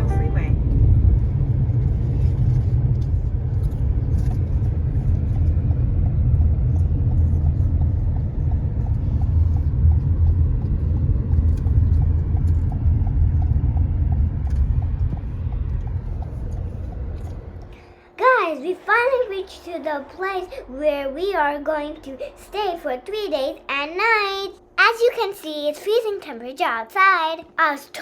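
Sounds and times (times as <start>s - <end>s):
car road noise rumble: 0.0s - 18.1s.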